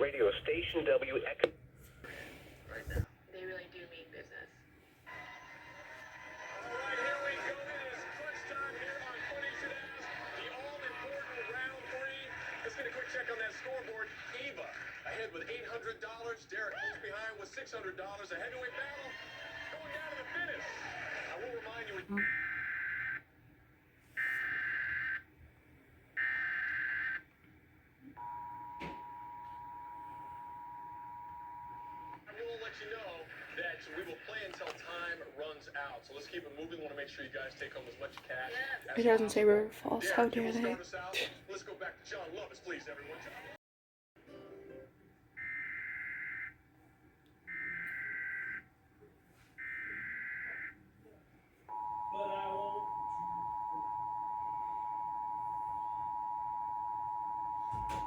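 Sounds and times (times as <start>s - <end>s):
two-tone attention signal: 28.2s - 32.1s, 51.7s - 58.0s.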